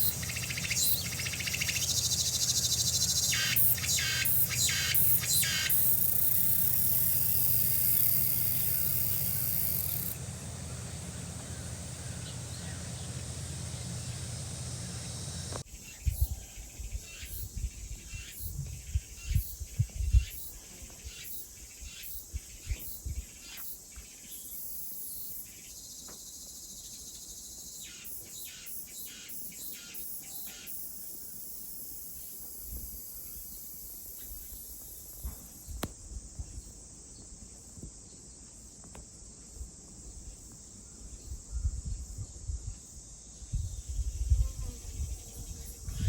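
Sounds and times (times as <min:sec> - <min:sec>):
bird chirps: 0:00.0 - 0:17.4
insects trilling: 0:00.0 - 0:46.0.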